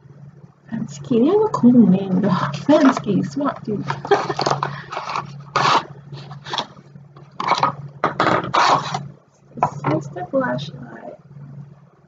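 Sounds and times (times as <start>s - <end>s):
steady low hum: 0.0s - 12.0s
packaging scraping and rustling: 3.9s - 6.8s, 7.4s - 9.0s.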